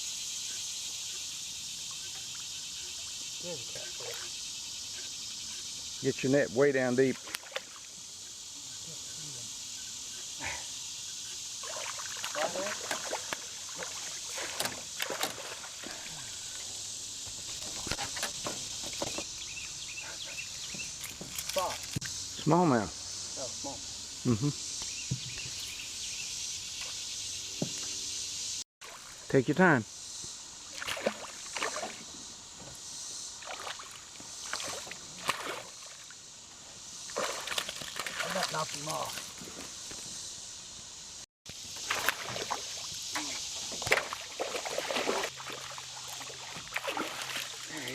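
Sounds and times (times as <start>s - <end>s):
small splashes and knocks: 7.0s - 8.0s, 11.6s - 19.3s, 20.6s - 22.1s, 28.8s - 29.3s, 30.7s - 32.1s, 33.4s - 36.1s, 37.1s - 40.0s, 41.5s - 47.9s
rushing river water: 11.6s - 16.8s, 41.8s - 47.9s.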